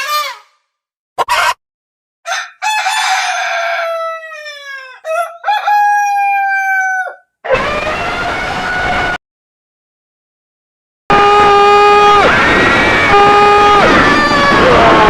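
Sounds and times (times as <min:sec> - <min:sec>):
rooster crowing: 0:02.3 - 0:09.2, 0:11.2 - 0:15.0.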